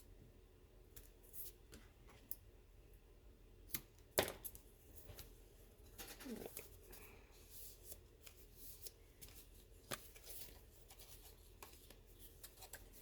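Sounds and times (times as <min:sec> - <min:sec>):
paper rustling: 0:05.9 - 0:13.0.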